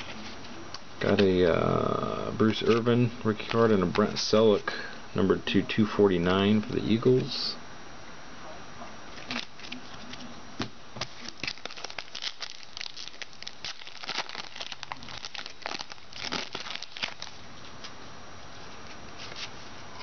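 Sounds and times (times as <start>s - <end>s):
wrapper crinkling: 11.0s - 17.9s.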